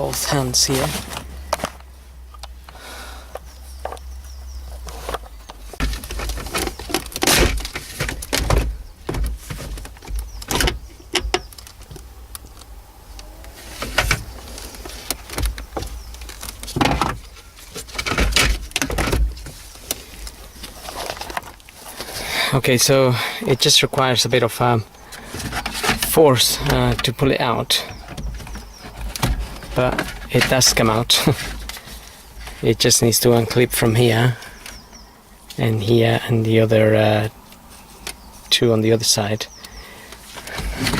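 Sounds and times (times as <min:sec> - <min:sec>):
plastic knocks and rattles: 0:05.8 - 0:12.1, 0:13.9 - 0:19.6, 0:27.9 - 0:31.8.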